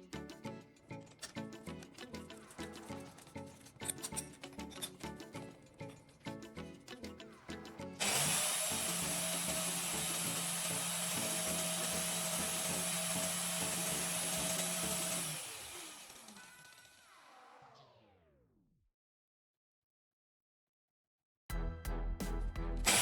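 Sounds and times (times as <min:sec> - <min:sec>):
background music: 0:00.0 - 0:15.8, 0:21.5 - 0:23.0
power tool whirring: 0:08.0 - 0:18.2.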